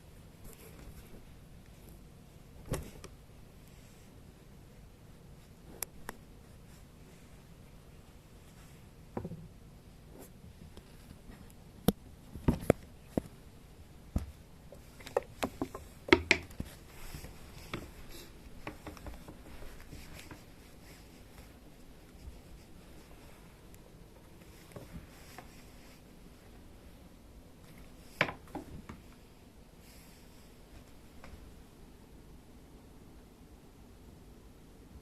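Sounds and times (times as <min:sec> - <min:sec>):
kittens tapping and knocking: 0:14.2 - 0:16.8.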